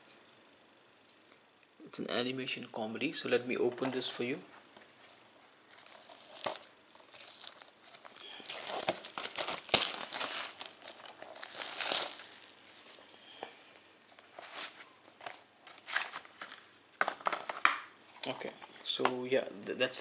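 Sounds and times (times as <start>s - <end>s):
plastic wrapping tearing and crinkling: 5.4s - 13.1s, 14.4s - 17.8s.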